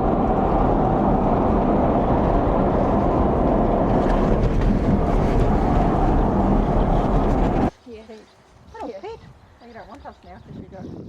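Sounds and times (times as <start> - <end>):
car road noise: 0.0 - 7.7
wind noise: 0.0 - 7.7, 8.4 - 11.0.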